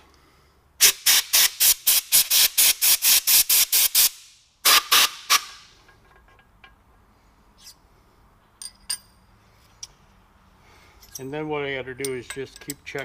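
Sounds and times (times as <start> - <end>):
air blow gun blasts: 0.8 - 5.6.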